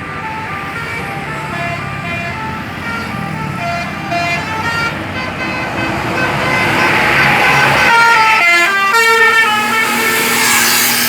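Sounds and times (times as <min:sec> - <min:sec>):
multi-tone bus horn melody: 0:00.0 - 0:11.0
traffic: 0:00.0 - 0:11.0.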